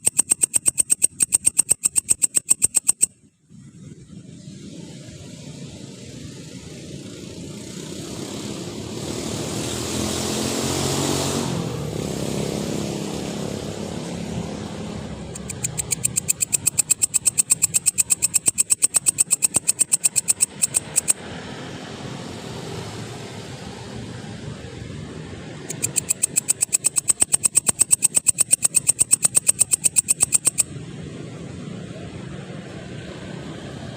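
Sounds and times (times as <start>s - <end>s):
grasshopper buzzing: 0.0s - 3.1s, 15.3s - 21.1s, 25.7s - 30.6s
vehicle passing: 6.9s - 33.9s.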